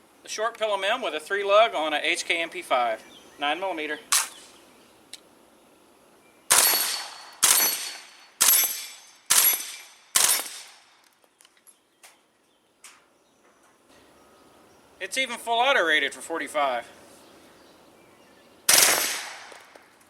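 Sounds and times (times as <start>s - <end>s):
suppressed gunshots: 6.5s - 10.8s, 18.7s - 19.8s.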